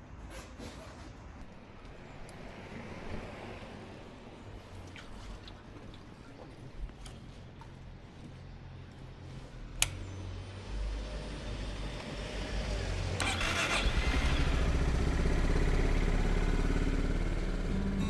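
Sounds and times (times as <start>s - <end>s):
motorcycle engine running: 13.2s - 18.0s.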